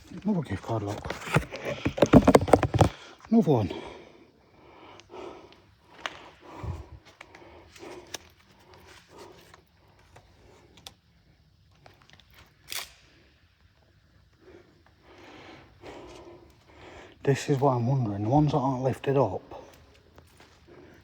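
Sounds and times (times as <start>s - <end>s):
footsteps on hard floor: 1.2s - 2.9s.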